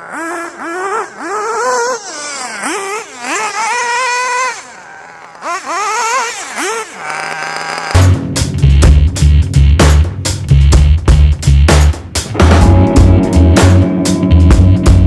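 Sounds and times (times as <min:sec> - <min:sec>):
small nitro engine revving: 0:00.0 - 0:08.2
loud music with heavy beat: 0:08.0 - 0:15.0.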